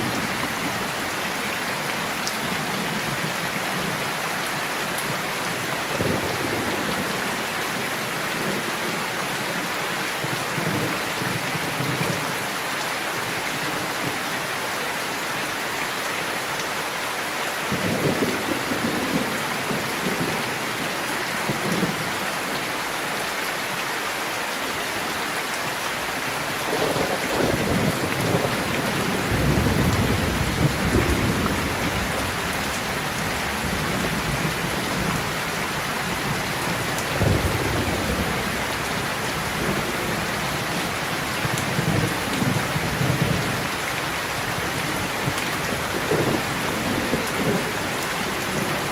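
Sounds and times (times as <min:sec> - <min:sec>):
heavy rain pattering: 0:00.0 - 0:48.9
thunder rumbling: 0:26.7 - 0:43.6.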